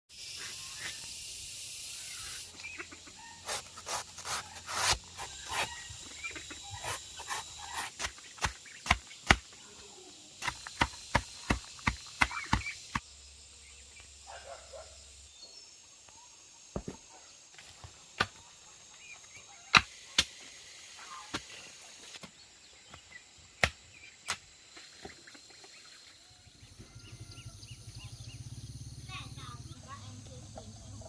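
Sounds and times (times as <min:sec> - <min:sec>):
high hissing: 0:00.1 - 0:13.6
outdoor hiss: 0:00.1 - 0:26.5.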